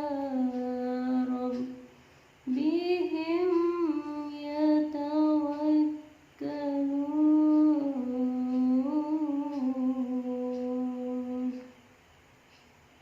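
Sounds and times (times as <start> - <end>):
person reciting melodically: 0.0 - 11.8.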